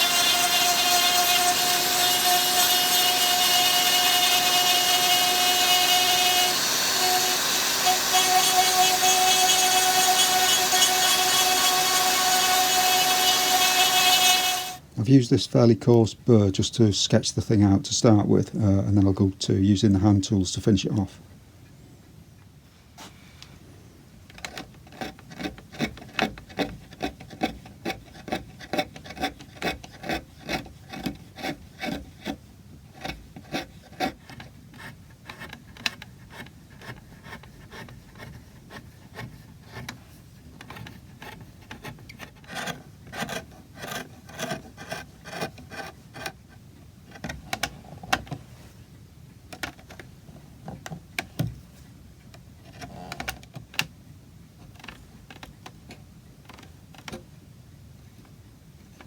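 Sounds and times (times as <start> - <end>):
carving tools scraping wood: 0.0 - 14.8, 24.3 - 48.3.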